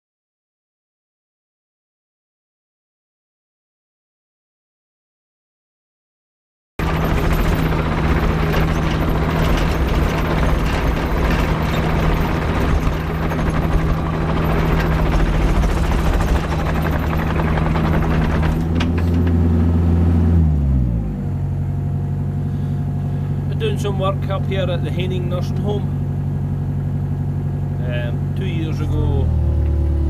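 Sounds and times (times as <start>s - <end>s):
diesel engine running with clatter: 6.8s - 30.0s.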